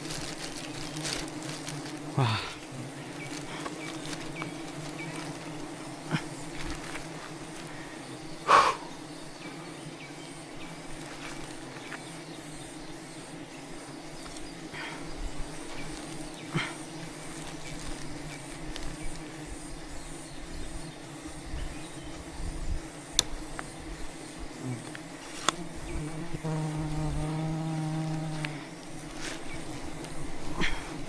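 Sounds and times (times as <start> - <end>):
bee buzzing close by: 0.0 - 31.0
honeybees humming: 0.0 - 31.0
sharp snaps: 23.1 - 23.6.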